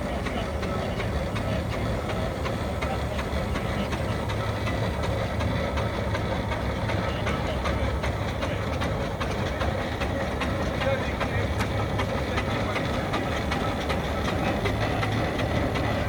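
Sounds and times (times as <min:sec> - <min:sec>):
engine running with fast ticking: 0:00.0 - 0:16.0.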